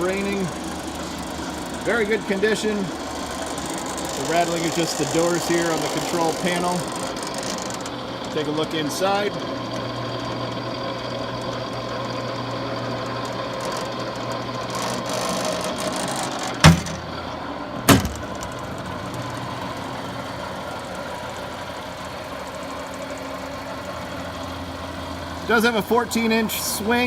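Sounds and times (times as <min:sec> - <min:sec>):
lathe running with mechanical hum: 0:00.0 - 0:27.0
sharp knocks: 0:14.8 - 0:17.1, 0:17.9 - 0:19.3.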